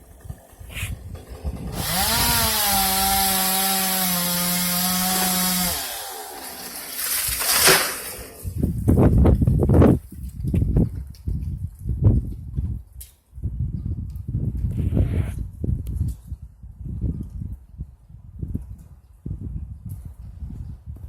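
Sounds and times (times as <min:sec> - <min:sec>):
chainsaw revving and cutting: 0:00.0 - 0:08.6
loud noisy bursts: 0:01.7 - 0:06.7.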